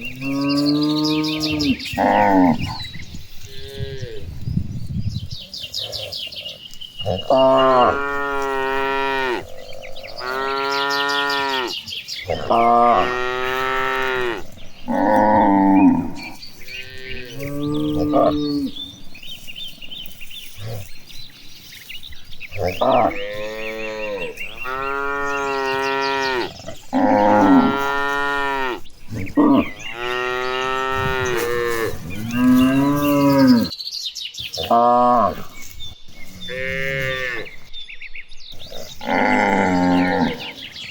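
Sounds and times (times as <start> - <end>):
cattle mooing: 7.0 - 18.9, 22.6 - 33.7, 36.4 - 37.6, 38.8 - 40.6.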